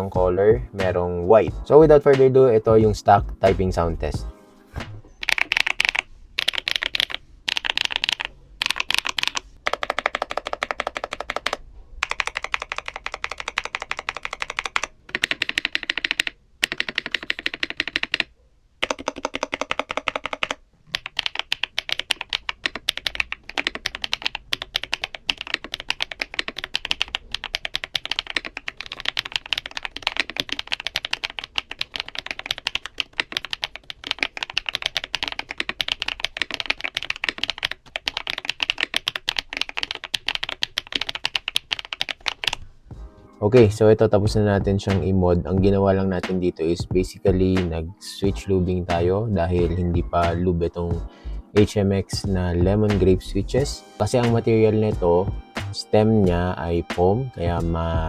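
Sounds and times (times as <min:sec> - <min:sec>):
fast typing on mechanical keyboard: 0:05.2 - 0:42.6.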